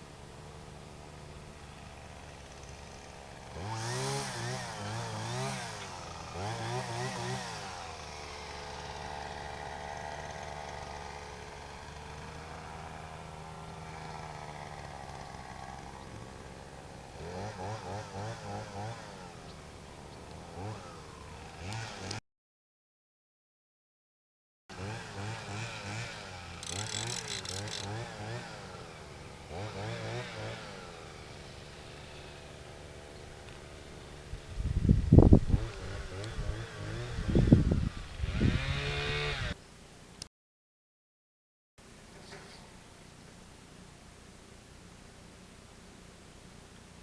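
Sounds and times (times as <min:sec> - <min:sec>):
small engine revving: 0:00.0 - 0:22.2, 0:24.7 - 0:39.6.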